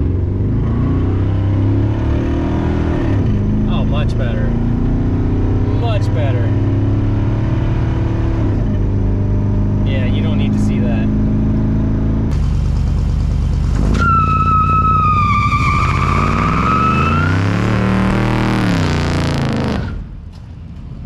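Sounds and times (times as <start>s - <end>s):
truck engine running: 8.8s - 16.7s
high squeal: 14.0s - 17.7s.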